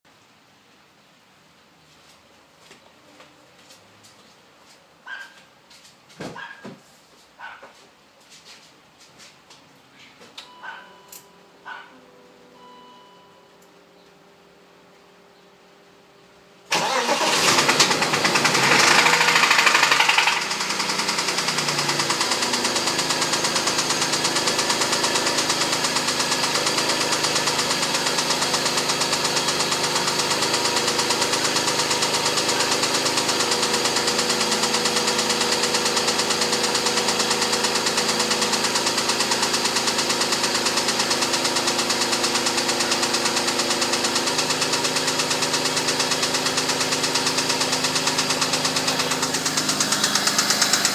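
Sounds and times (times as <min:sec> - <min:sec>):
car engine starting and idling: 0:16.7 - 0:50.9
fast even engine knocking: 0:18.2 - 0:22.6.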